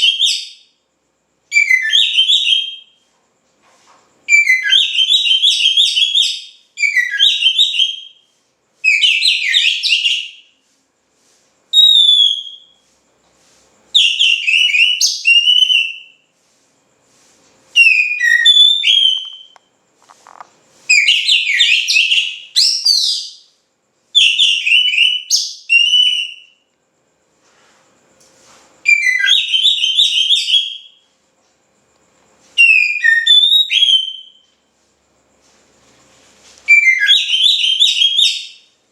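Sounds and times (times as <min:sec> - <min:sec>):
bird singing whistled notes: 0:00.0 - 0:00.7, 0:01.5 - 0:03.0, 0:04.3 - 0:08.2, 0:08.8 - 0:10.5, 0:11.7 - 0:12.8, 0:14.0 - 0:16.2, 0:17.8 - 0:19.6, 0:20.9 - 0:23.5, 0:24.2 - 0:26.6, 0:28.8 - 0:31.0, 0:32.6 - 0:34.5, 0:36.7 - 0:38.7.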